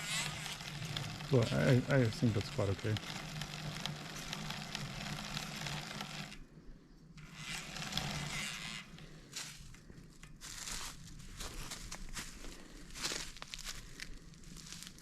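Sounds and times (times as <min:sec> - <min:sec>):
bicycle freehub ratcheting: 0:00.0 - 0:06.4, 0:07.2 - 0:09.2.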